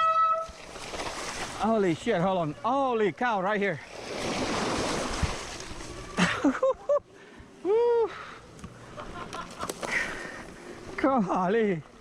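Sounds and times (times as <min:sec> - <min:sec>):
bike splashing through water: 0:00.4 - 0:02.3, 0:03.4 - 0:06.9
person saying ooh: 0:07.6 - 0:08.1.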